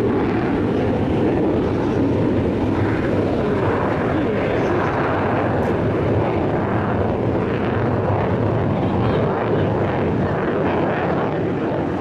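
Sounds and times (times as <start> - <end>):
jet engine roar: 0.0 - 12.0.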